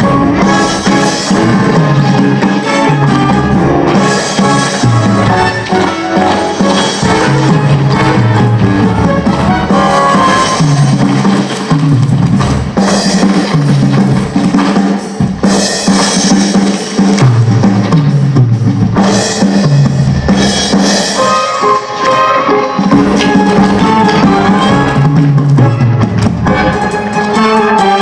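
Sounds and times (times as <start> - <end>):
repeating bass line: 0.0 - 11.2
drum kit with snare and bass drum: 0.0 - 28.0.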